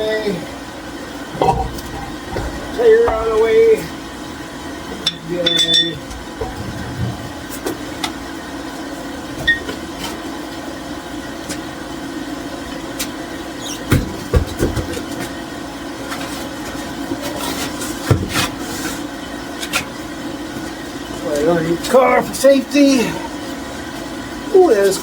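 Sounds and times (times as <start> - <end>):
steady hum: 0.0 - 9.9
car wheel thumps and clunks: 1.4 - 3.4.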